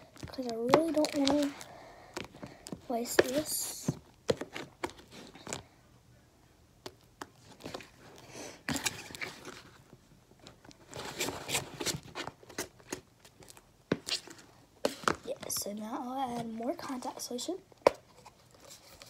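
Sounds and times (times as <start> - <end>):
slime crackling and squelching: 0.0 - 3.9.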